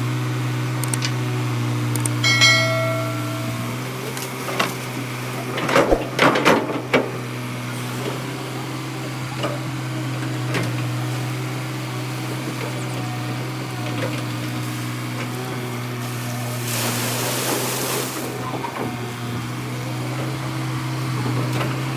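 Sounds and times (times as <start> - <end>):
excavator diesel engine running: 0.0 - 16.6, 18.2 - 21.9
metallic knocks and clanks: 2.3 - 3.8.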